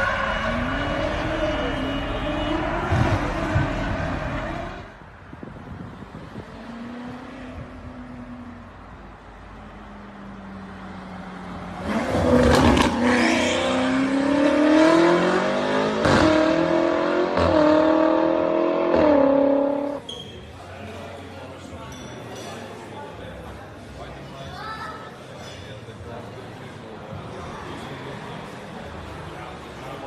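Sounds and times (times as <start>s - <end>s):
car engine revving and accelerating: 11.4s - 20.0s.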